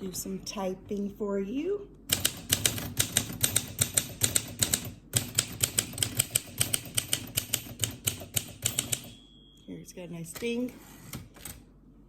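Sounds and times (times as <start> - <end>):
manual typewriter clacking: 2.1 - 9.2.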